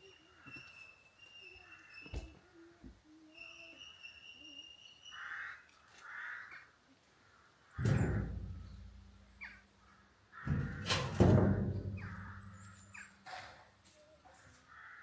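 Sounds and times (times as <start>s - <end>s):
crows cawing: 5.1s - 7.5s, 9.8s - 11.0s, 14.5s - 15.0s.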